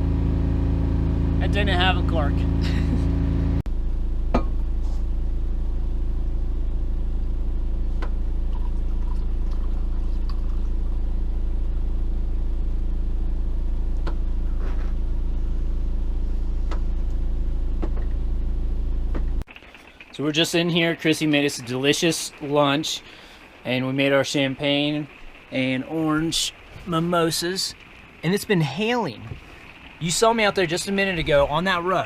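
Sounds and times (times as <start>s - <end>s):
engine humming steadily: 0.0s - 32.0s.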